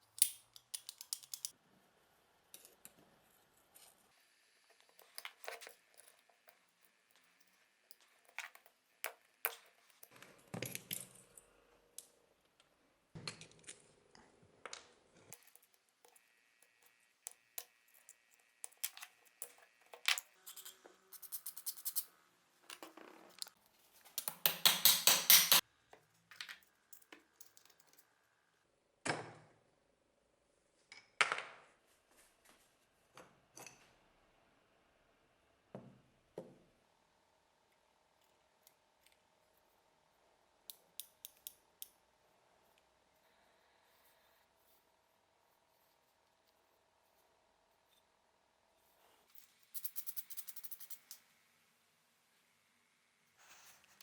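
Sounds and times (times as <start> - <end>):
metal parts clicking and clinking: 0.1 - 1.5, 26.3 - 28.1.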